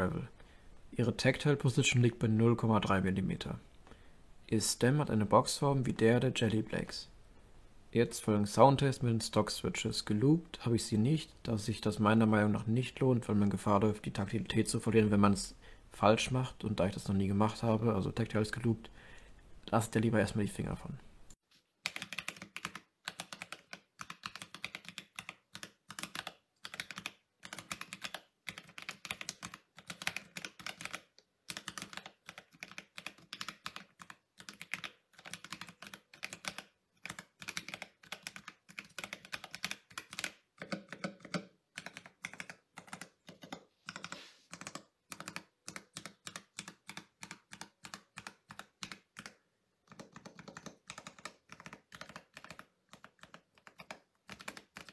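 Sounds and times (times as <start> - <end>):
mechanical keyboard typing: 21.8 - 54.9.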